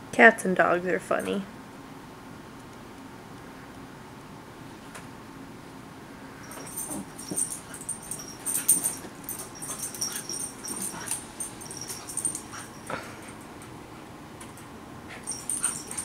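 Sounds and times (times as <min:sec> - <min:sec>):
puppy whining: 0:06.5 - 0:13.4, 0:15.1 - 0:16.0.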